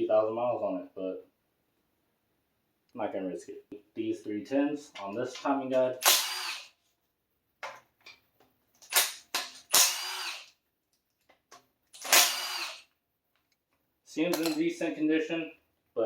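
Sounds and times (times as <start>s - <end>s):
cordless power driver whirring: 6.0s - 6.7s, 8.9s - 10.5s, 12.0s - 12.8s.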